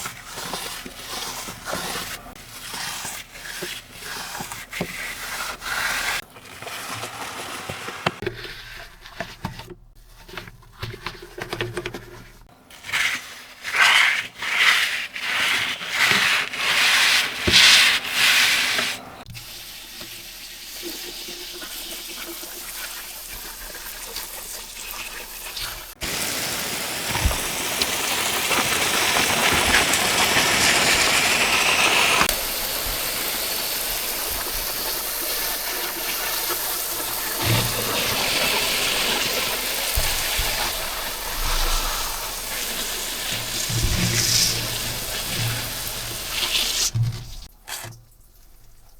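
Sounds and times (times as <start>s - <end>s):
brush scrubbing plastic: 0.0s - 47.9s
running water: 19.3s - 48.9s.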